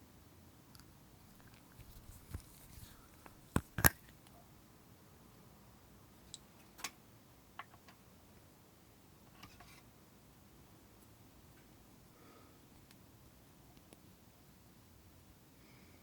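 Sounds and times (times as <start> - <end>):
slime clicking and popping: 2.2 - 4.1.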